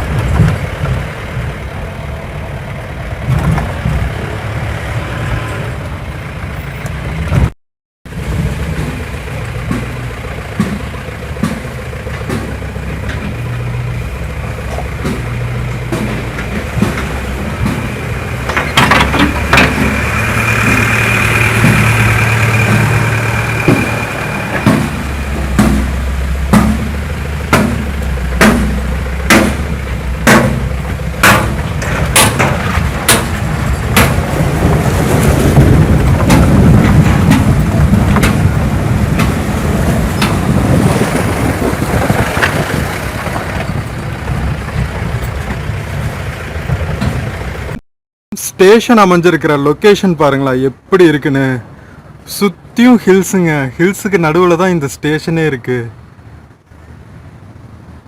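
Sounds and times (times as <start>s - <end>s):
vehicle engine running: 8.1s - 47.8s
sharp regular knocks: 15.0s - 34.2s.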